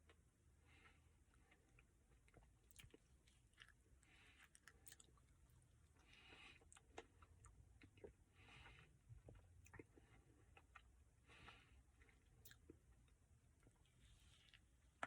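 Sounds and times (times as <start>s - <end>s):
soft chewing: 0.0s - 15.0s.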